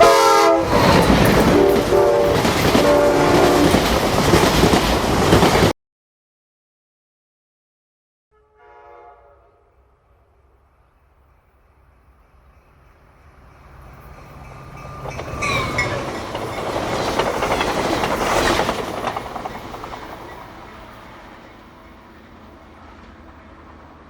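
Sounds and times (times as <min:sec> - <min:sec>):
train rumble: 0:00.0 - 0:05.7, 0:09.8 - 0:24.0
train wheels clattering over rails: 0:00.6 - 0:05.7, 0:13.7 - 0:23.4.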